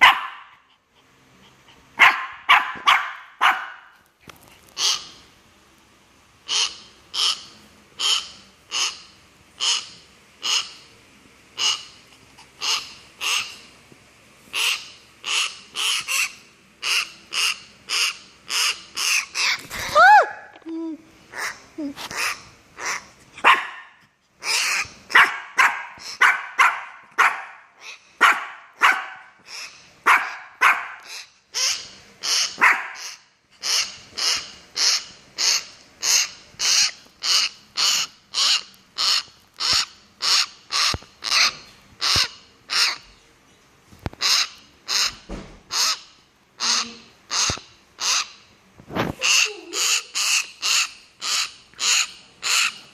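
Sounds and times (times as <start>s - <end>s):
myna bird calling: 4.8s - 5.2s, 6.4s - 10.9s, 11.6s - 13.7s, 14.5s - 20.1s, 21.3s - 23.2s, 24.4s - 26.7s, 27.7s - 43.2s, 44.1s - 48.5s, 49.2s - 52.9s.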